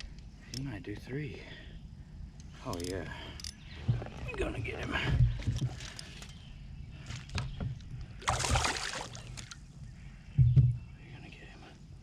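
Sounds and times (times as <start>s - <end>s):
loud splash: 8.2s - 9.4s
water splashing against kayak: 8.2s - 9.6s.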